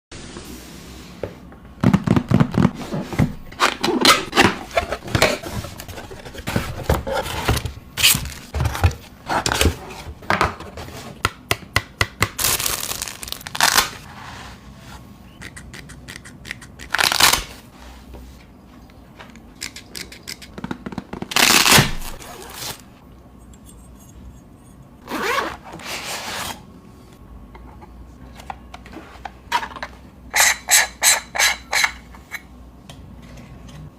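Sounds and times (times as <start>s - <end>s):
plastic and cardboard rustling: 1.9s - 11.2s
packaging ripping: 12.4s - 14.0s, 16.9s - 17.6s, 21.2s - 22.9s.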